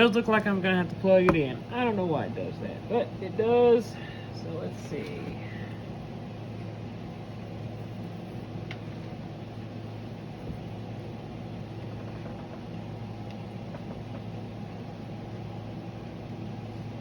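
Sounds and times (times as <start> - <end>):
low background hum: 0.0 - 17.0.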